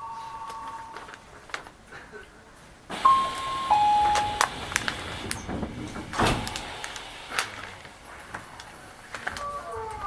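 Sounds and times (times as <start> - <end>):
two-tone train door chime: 0.0 - 1.2, 2.9 - 7.4
rushing noise: 2.9 - 9.2
clicks and knocks: 3.0 - 7.6
loud thud: 4.2 - 7.4.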